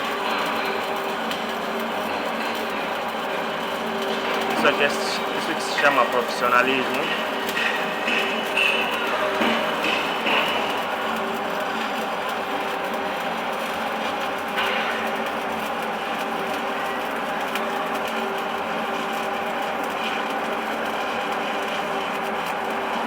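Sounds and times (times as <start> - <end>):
welding arc crackling: 0.0 - 23.0
electrical hum: 2.1 - 11.7.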